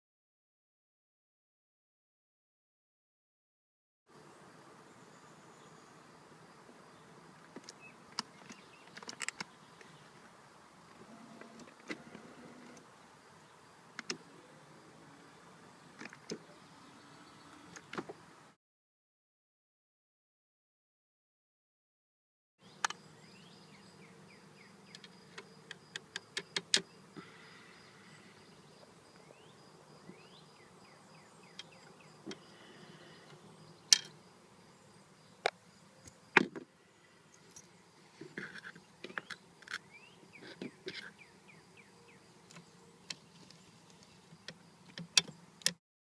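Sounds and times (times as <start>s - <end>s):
faint steady hum: 4.1s - 18.6s, 22.6s - 45.7s.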